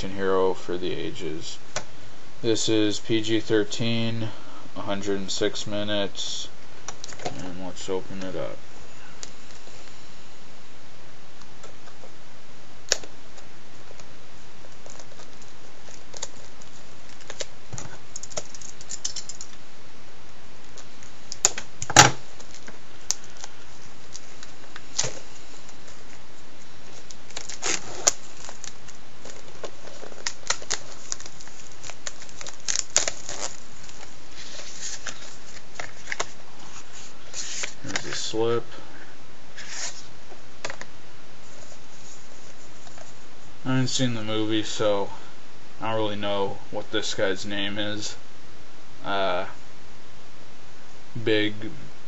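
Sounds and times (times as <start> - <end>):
steady hiss: 0.0 - 52.0
plastic wrapping crinkling and tearing: 14.7 - 19.6, 20.7 - 26.2, 26.8 - 38.2.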